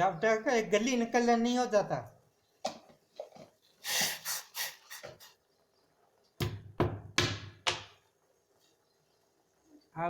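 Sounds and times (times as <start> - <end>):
utensil knocking on hard surface: 6.4 - 8.0.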